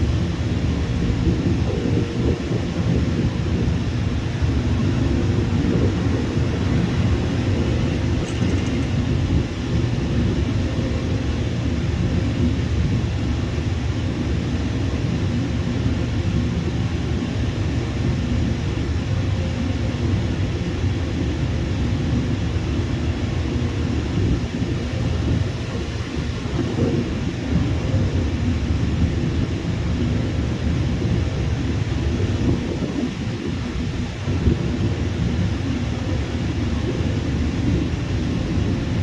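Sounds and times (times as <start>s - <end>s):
jet engines running: 0.0s - 10.4s.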